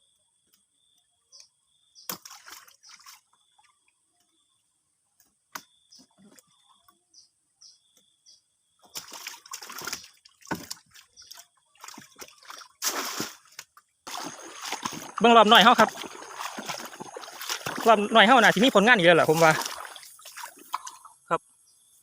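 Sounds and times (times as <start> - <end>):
water splashing and sloshing: 2.1 - 4.0, 8.8 - 21.3
water dripping: 9.0 - 21.3.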